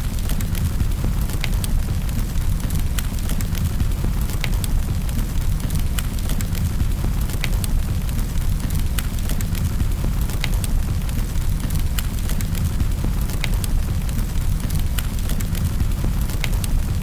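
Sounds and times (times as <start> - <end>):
low rumble of flames: 0.0 - 17.0
wood fire crackling: 0.0 - 17.0.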